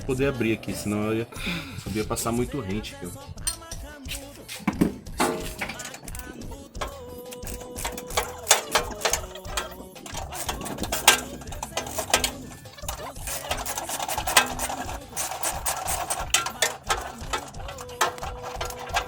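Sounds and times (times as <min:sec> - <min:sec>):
knocks on metal bolts: 0:04.6 - 0:07.0
rapid mechanical tool clicking: 0:05.6 - 0:19.0.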